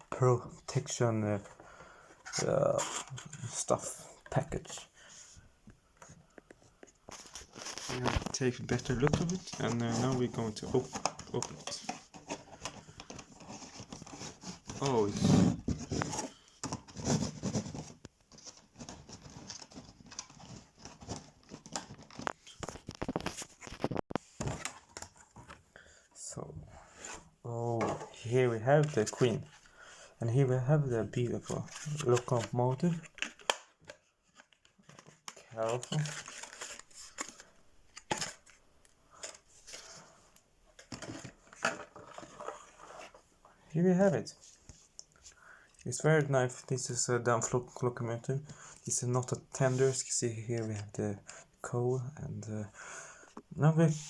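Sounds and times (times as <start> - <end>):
packaging rustling: 7.1 - 25.3, 31.0 - 38.6.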